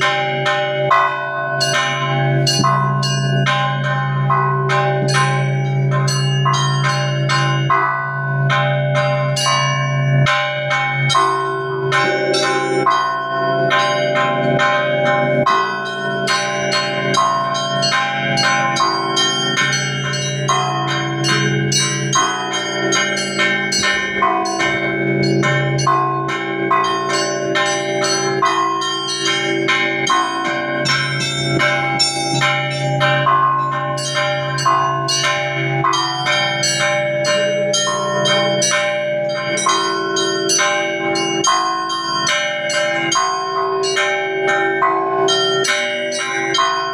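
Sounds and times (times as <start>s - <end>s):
hum of large bells: 0.0s - 46.9s
small church bells striking rapidly: 0.0s - 46.9s.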